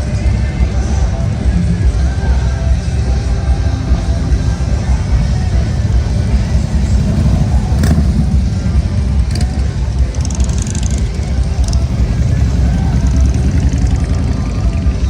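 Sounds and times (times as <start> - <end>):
motorcycle engines rumbling: 0.0 - 15.0.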